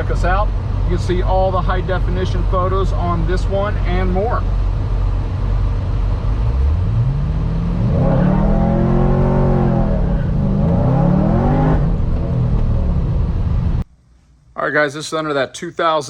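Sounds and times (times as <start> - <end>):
car engine revving: 4.5 - 13.8.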